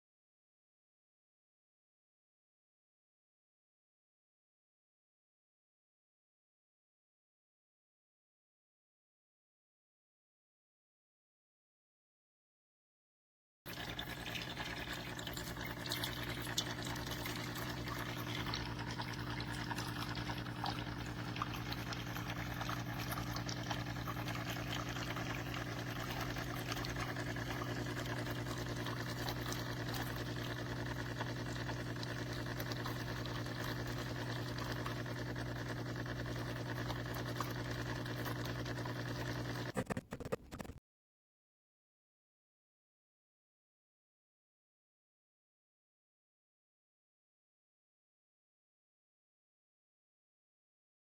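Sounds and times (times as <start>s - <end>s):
liquid pouring: 13.7s - 39.7s
espresso machine pump humming: 13.7s - 40.0s.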